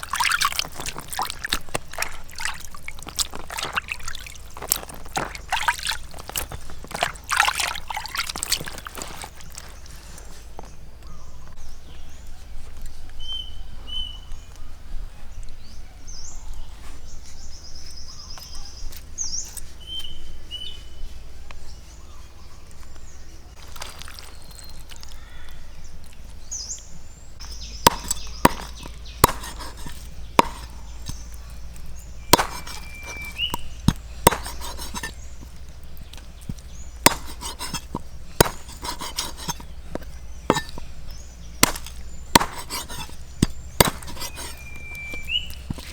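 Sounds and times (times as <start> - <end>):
birds chirping: 0.0 - 45.9
knife chopping on wooden board: 27.4 - 45.9.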